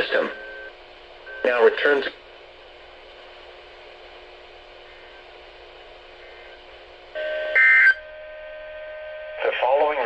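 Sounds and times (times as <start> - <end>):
radio static hiss: 0.0 - 0.4, 1.4 - 7.1, 9.4 - 10.0
low steady hum: 0.0 - 10.0.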